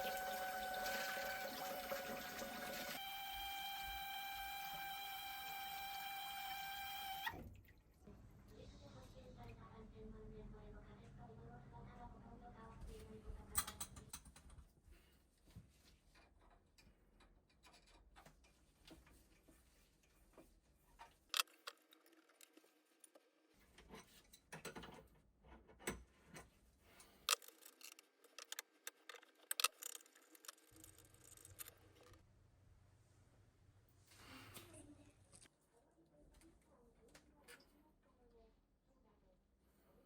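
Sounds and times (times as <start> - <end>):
light clicks and knocks of parts: 16.0 - 32.2.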